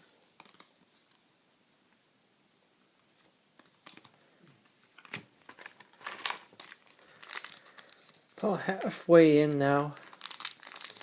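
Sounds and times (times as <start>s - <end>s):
trading cards being handled: 0.2s - 1.2s, 3.1s - 11.0s.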